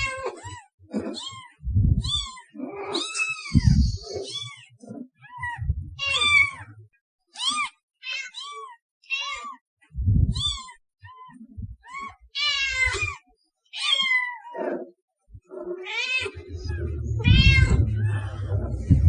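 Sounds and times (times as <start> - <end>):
cat meowing: 0.0 - 6.7, 7.4 - 9.6, 10.3 - 14.7, 15.8 - 19.0
low thumps: 1.6 - 2.2, 3.5 - 4.0, 5.6 - 6.0, 10.0 - 10.4, 16.4 - 19.0.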